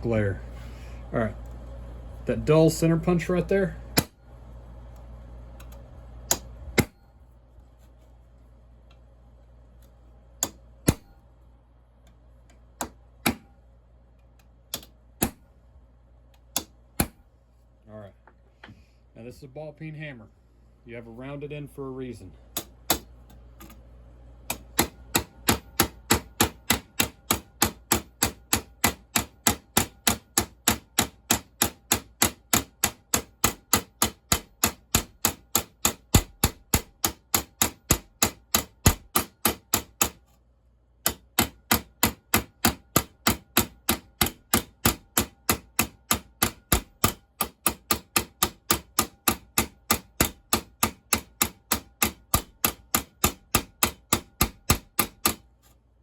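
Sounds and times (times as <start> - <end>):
hammer tapping on metal rivets: 24.5 - 40.2, 41.0 - 55.5.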